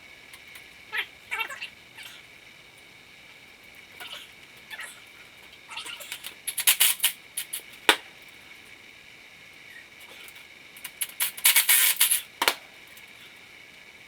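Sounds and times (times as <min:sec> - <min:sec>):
hand tools clicking and rattling: 0:06.1 - 0:08.0, 0:10.8 - 0:12.6.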